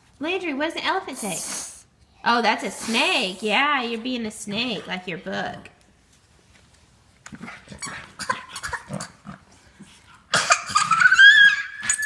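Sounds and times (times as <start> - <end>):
toddler high rising squeal: 10.9 - 12.0.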